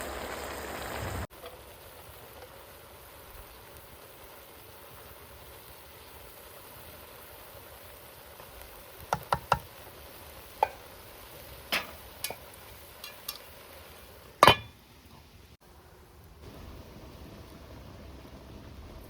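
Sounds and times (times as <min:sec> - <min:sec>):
faint steady hiss: 0:00.0 - 0:19.0
utensils clinking against cookware: 0:13.0 - 0:13.5, 0:14.4 - 0:14.8.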